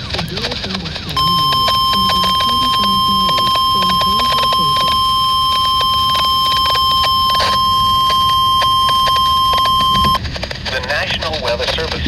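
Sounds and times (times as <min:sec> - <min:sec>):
radio static clicks: 0:00.0 - 0:12.0
steady high alarm tone: 0:01.2 - 0:10.2.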